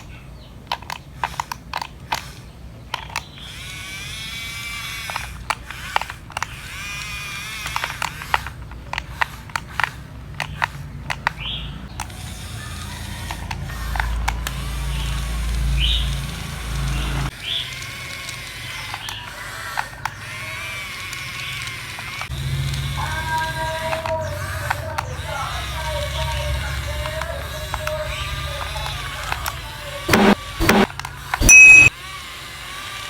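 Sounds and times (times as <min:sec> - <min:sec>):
sharp clicks: 0:00.0 - 0:04.1, 0:29.2 - 0:31.9
toy motors whirring: 0:00.0 - 0:33.0.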